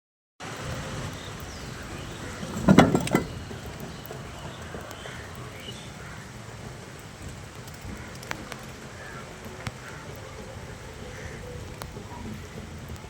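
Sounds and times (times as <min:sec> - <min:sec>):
light rain hissing: 0:00.4 - 0:02.6, 0:03.3 - 0:13.0
loud knocks: 0:02.5 - 0:03.4.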